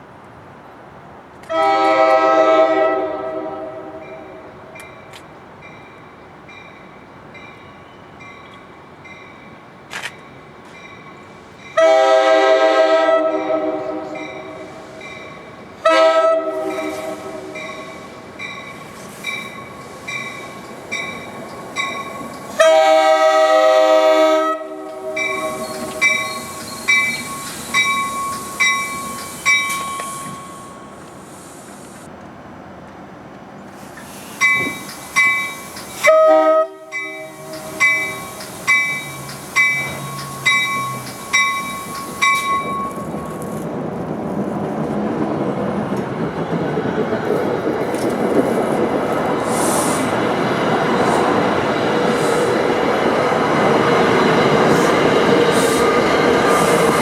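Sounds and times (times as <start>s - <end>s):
train air horn blasts: 1.4s - 4.5s, 11.8s - 15.1s, 15.8s - 18.0s, 22.5s - 26.5s, 36.0s - 41.0s
bell ringing: 37.0s - 43.3s.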